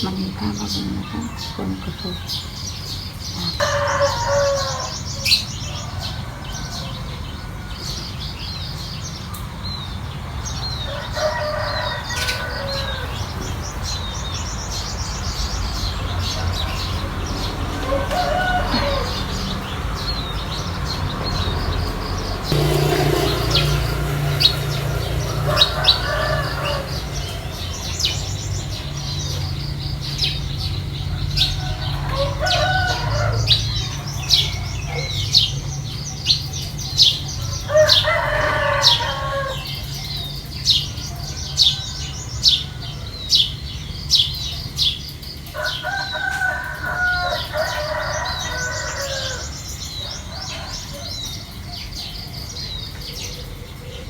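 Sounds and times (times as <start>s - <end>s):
rooster crowing: 0.0s - 8.0s, 10.8s - 13.4s, 16.2s - 20.1s, 22.5s - 29.1s, 31.1s - 34.4s, 37.5s - 40.0s, 45.6s - 51.3s
small birds chirping: 0.0s - 54.0s.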